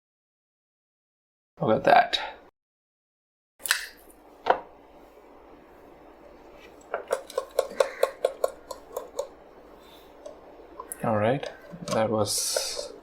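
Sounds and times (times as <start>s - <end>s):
tapping on hard plastic: 7.0s - 9.3s.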